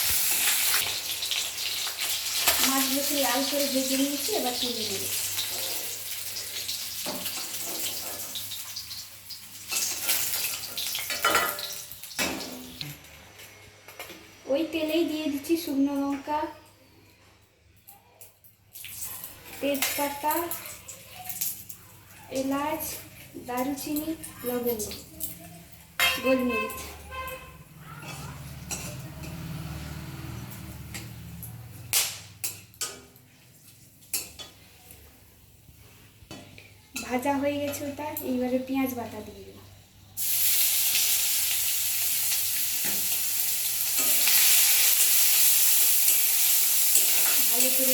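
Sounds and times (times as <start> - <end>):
fish sizzling in hot oil: 0.0 - 12.8, 40.1 - 47.9
spices sizzling in hot oil: 0.0 - 12.9, 18.7 - 36.3, 37.0 - 47.9
metal spoon knocking on pan: 26.0 - 26.9.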